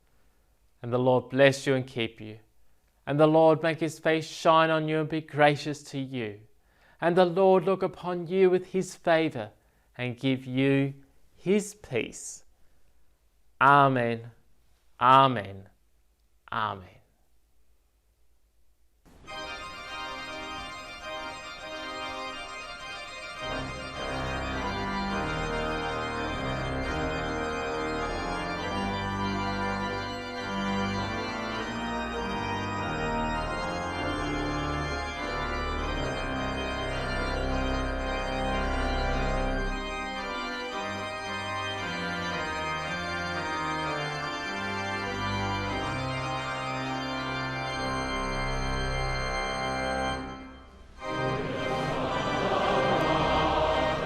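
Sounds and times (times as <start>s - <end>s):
deep bass organ notes: 19.1s - 54.0s
organ music: 19.1s - 54.0s.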